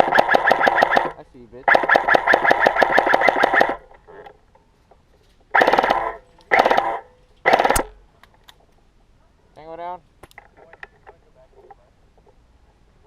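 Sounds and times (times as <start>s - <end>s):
airsoft rifle full-auto bursts: 0.0s - 3.8s, 5.5s - 8.0s
sharp crack: 0.0s - 4.0s, 5.5s - 8.6s.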